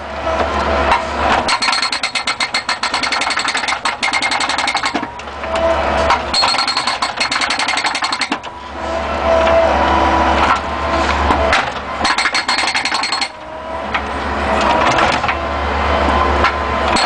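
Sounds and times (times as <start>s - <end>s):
loader engine running: 0.0s - 17.0s
hydraulic breaker hammering: 0.9s - 8.5s, 11.3s - 14.0s, 16.4s - 17.0s.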